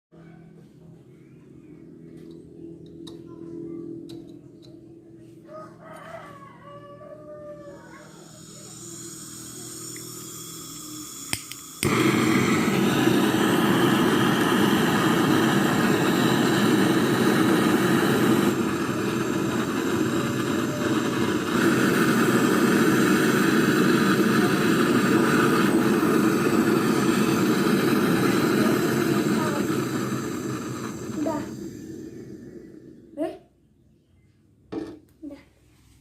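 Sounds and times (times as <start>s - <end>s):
torch flame rushing: 8.3s - 33.4s
torch igniter clicks: 9.8s - 31.8s.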